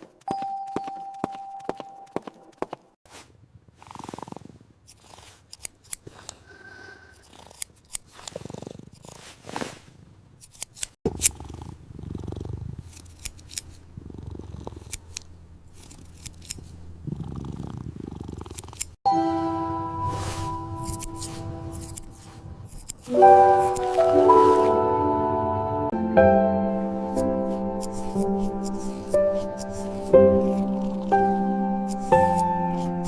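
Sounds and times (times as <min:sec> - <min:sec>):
cat purring: 0:03.4 - 0:05.4, 0:06.4 - 0:10.4, 0:11.1 - 0:12.9, 0:13.8 - 0:15.1, 0:17.0 - 0:19.0, 0:30.3 - 0:31.5
sharp clicks and snips: 0:04.9 - 0:06.4, 0:07.1 - 0:09.1, 0:10.4 - 0:11.4, 0:12.8 - 0:13.8, 0:14.8 - 0:16.8, 0:18.4 - 0:19.0, 0:20.9 - 0:23.9.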